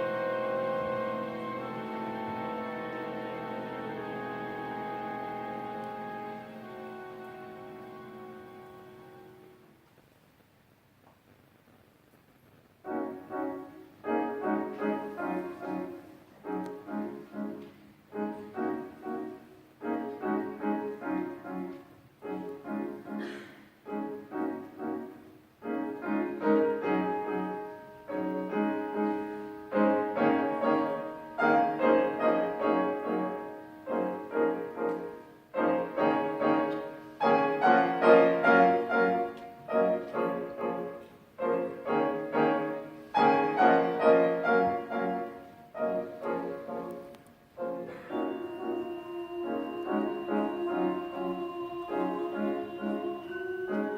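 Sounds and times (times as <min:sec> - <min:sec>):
solo piano chords: 0:00.0 - 0:09.8, 0:12.8 - 0:53.9.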